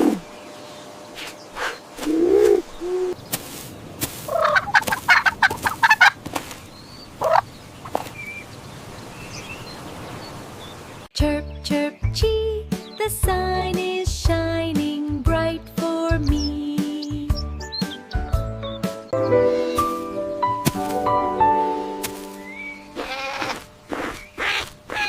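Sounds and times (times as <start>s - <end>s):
poultry calling: 4.3s - 6.2s, 7.2s - 8.1s, 22.4s - 25.0s
rapid rattling poultry call: 4.3s - 6.2s, 7.2s - 7.4s, 23.0s - 25.0s.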